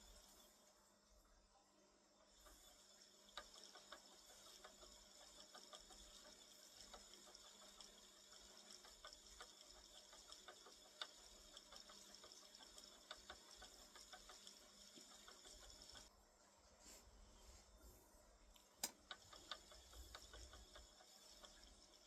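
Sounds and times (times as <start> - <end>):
spinning wheel clicking: 0.0 - 0.7, 2.2 - 16.1, 18.7 - 22.0
steady hiss: 0.0 - 1.0.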